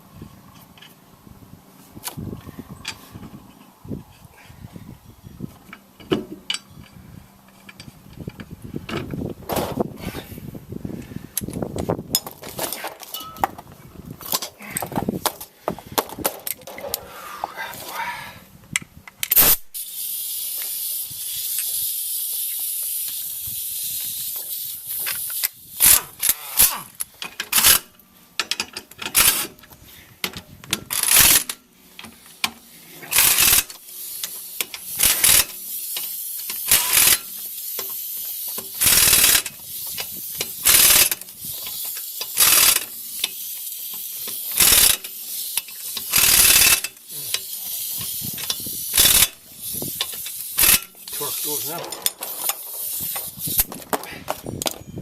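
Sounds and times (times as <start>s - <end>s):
impact wrench bursts: 19.3s - 29.6s, 30.7s - 53.7s
steady air hiss: 19.4s - 28.4s, 31.0s - 51.8s.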